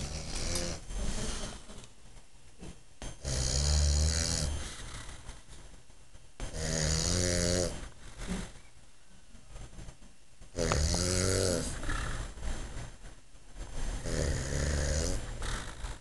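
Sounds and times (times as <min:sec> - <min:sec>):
man snoring: 0:03.2 - 0:04.6, 0:06.5 - 0:07.8, 0:10.6 - 0:11.8, 0:14.0 - 0:15.8.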